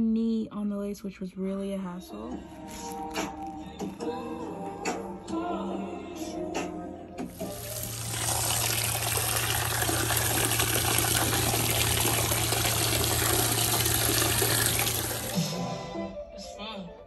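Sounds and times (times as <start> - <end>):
tap water running: 7.2 - 15.5.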